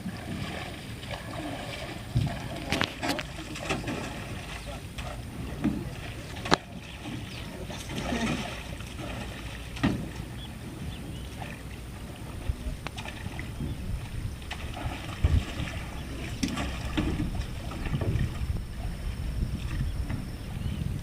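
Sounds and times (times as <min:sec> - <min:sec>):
water splashing around boat: 0:00.0 - 0:21.0
wind rumble on microphone: 0:00.0 - 0:21.0
knocks against boat hull: 0:09.7 - 0:10.2.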